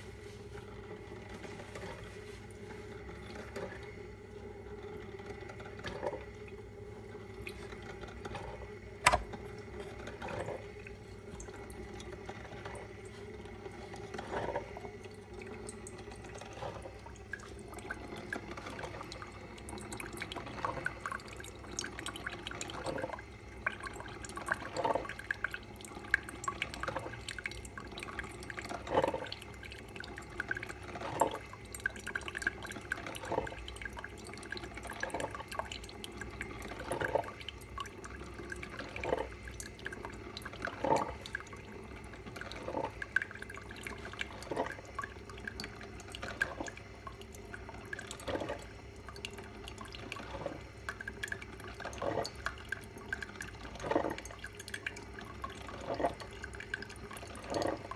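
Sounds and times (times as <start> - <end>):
coffee dripping into mug: 14.0 - 57.9.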